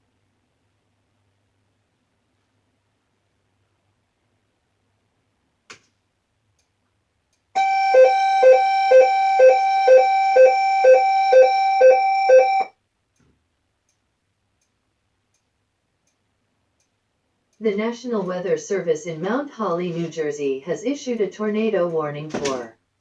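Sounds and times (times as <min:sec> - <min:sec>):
pulsing electronic alarm tone: 0:07.6 - 0:12.7.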